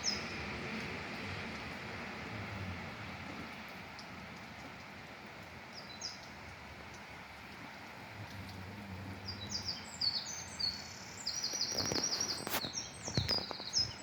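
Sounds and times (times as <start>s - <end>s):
background hiss: 0.0s - 13.0s
songbird chirping: 5.7s - 14.0s.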